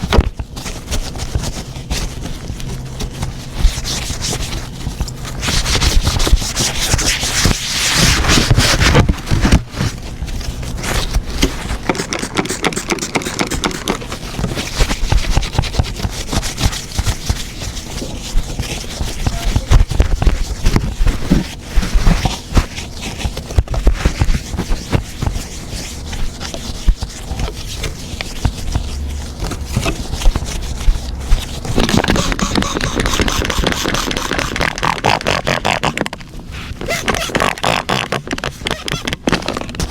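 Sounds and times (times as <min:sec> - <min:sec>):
hands scraping on tablet: 0:03.0 - 0:39.9.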